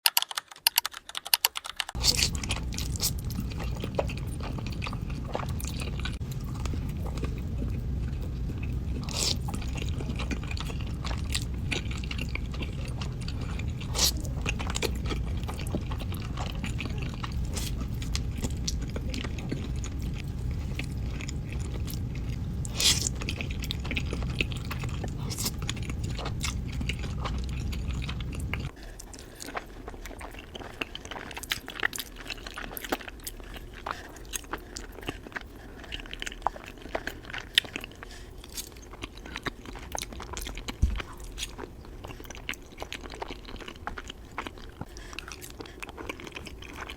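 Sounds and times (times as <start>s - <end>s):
chewing spaghetti: 0.1s - 46.9s
steady low hum: 2.0s - 46.9s.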